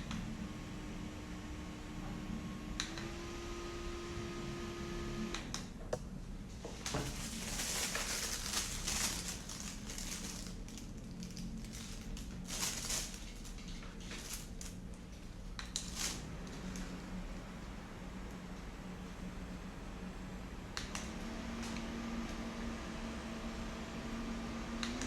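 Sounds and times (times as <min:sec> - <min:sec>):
mini fan humming: 0:00.0 - 0:25.0
rustling and crinkling: 0:06.5 - 0:17.0.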